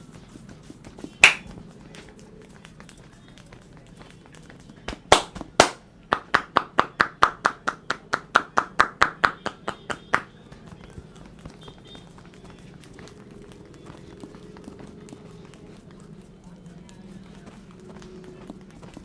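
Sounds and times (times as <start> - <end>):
rapid tapping slaps: 0.0 - 19.0
hands slapping skin: 0.8 - 11.6.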